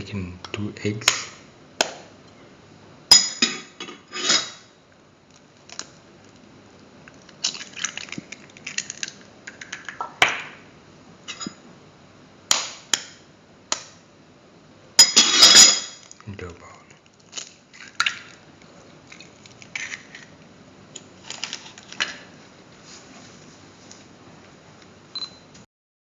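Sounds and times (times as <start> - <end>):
eggshells crackling: 5.3 - 10.0.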